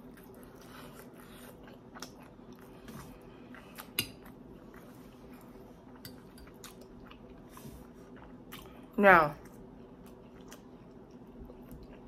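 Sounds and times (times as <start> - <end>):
person chewing and biting: 0.0 - 7.5
faint steady hum: 0.0 - 12.0.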